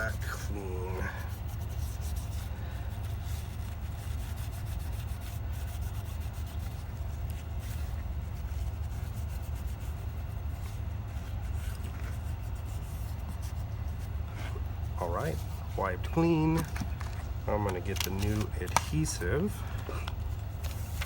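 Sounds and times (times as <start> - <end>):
cloth rubbing strokes: 0.0 - 16.5
steady low hum: 0.0 - 21.0.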